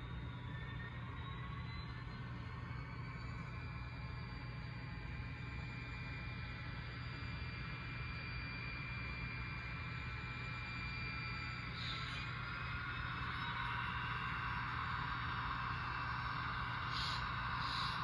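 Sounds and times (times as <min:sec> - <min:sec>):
model train diesel engine sound: 0:09.5 - 0:18.0.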